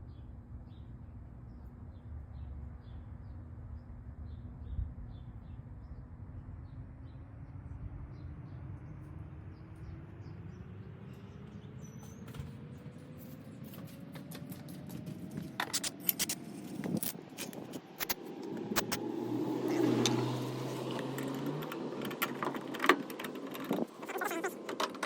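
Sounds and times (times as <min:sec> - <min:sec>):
metallic clicks of hand tools: 0:15.5 - 0:19.0.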